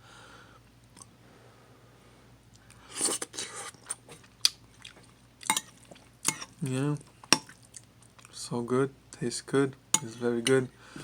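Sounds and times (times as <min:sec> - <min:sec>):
person chewing with clicks: 0:03.8 - 0:08.4.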